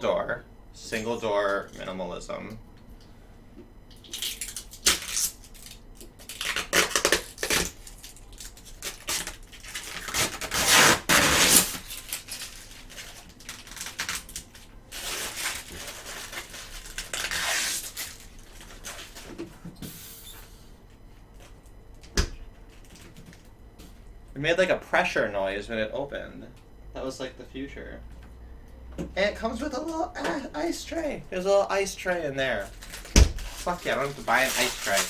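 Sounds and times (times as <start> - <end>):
packaging being torn and crumpled: 4.0 - 19.2, 32.6 - 35.0.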